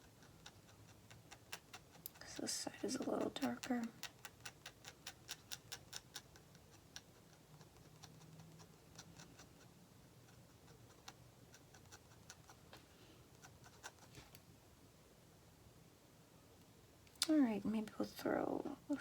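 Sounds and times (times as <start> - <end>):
pen ticking on paper: 0.0 - 12.6.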